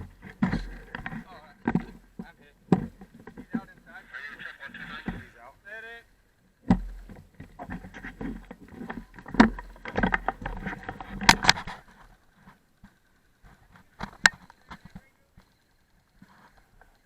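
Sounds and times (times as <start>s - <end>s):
knocking and clicking gear: 0.0s - 3.8s, 6.7s - 11.7s.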